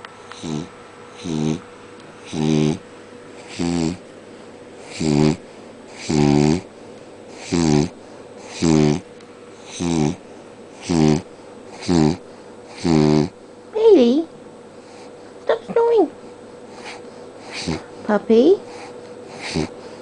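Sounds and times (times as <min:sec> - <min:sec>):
dog snoring: 0:00.3 - 0:04.0, 0:04.8 - 0:13.4, 0:16.7 - 0:20.0.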